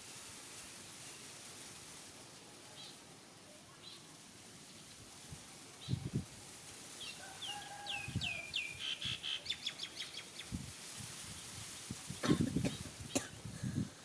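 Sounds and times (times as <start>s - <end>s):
bird chirping and trilling: 7.0s - 10.5s.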